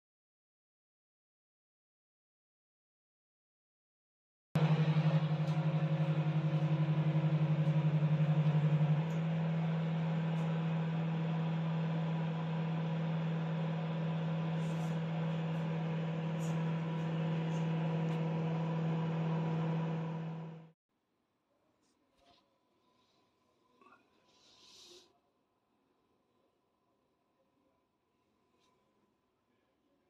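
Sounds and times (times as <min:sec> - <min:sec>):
microwave fan whirring: 0:04.6 - 0:20.7
microwave oven hum: 0:04.6 - 0:20.7.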